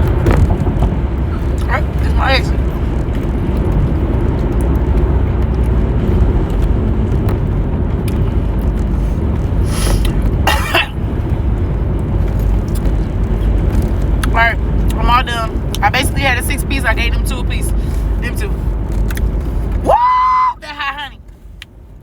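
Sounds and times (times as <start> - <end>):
car cabin rumble: 0.0 - 22.0
person coughing: 9.9 - 11.0.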